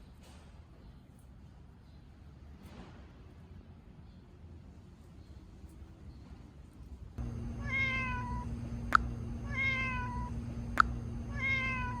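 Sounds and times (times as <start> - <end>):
steady hum: 7.2 - 12.0
cat meowing: 7.6 - 8.5, 9.4 - 10.4, 11.3 - 12.0.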